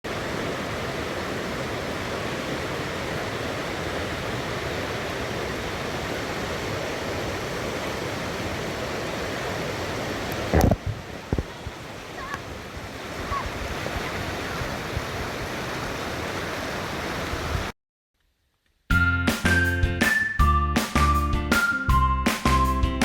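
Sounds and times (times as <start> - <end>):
river rushing over rocks: 0.1 - 17.7.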